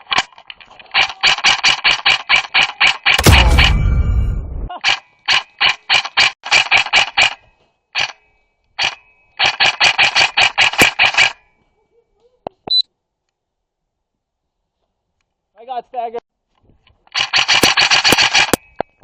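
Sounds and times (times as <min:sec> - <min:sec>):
airsoft rifle firing: 0:03.1 - 0:03.9, 0:17.2 - 0:18.7.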